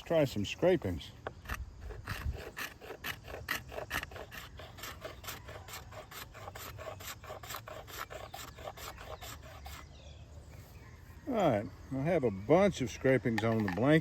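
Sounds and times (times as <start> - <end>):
knife scraping wood: 0.8 - 10.0.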